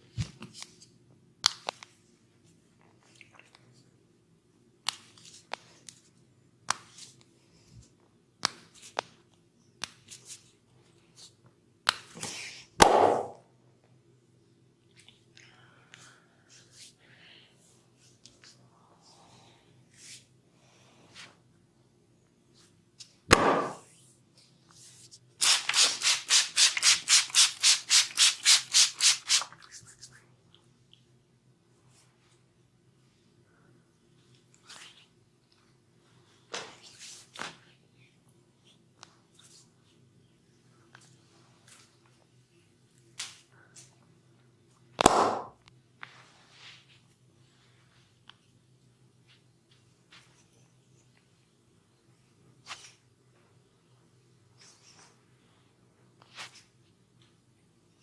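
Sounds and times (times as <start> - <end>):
hands slapping skin: 6.6 - 7.1, 8.4 - 9.1, 9.8 - 10.1, 12.8 - 13.4, 23.3 - 23.8, 45.0 - 45.6
sharp smack on skin: 12.8 - 13.4, 23.3 - 23.8, 45.0 - 45.5.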